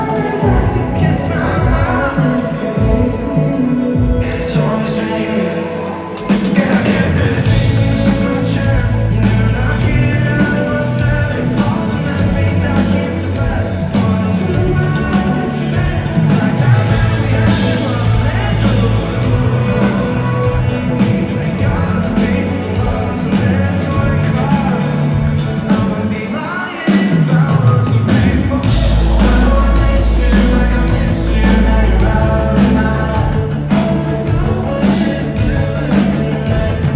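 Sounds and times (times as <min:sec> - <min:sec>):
lead singer singing: 0:00.0 - 0:36.9
live pop-rock band playing: 0:00.0 - 0:36.9
heavy bass note: 0:28.7 - 0:34.2.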